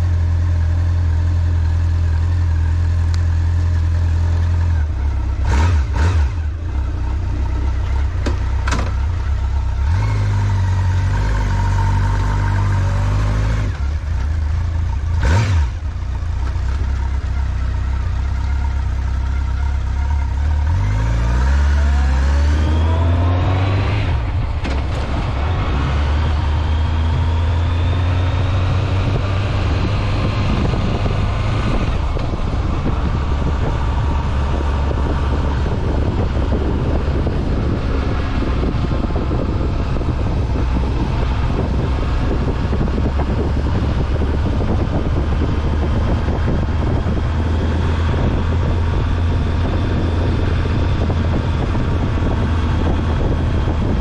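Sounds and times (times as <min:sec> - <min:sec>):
motorcycle engine running: 0:00.0 - 0:20.8, 0:21.4 - 0:54.0
wind rushing over microphone: 0:20.7 - 0:54.0.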